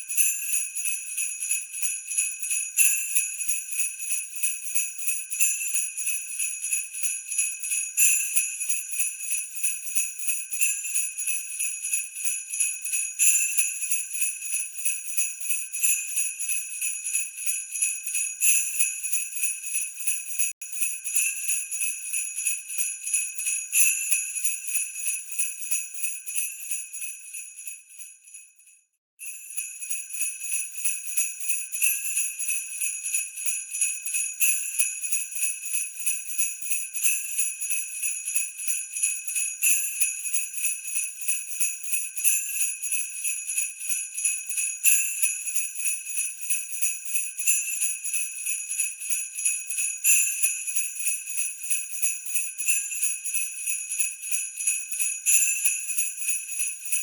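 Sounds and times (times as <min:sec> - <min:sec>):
sleigh bells jingling: 0:31.8 - 0:57.0.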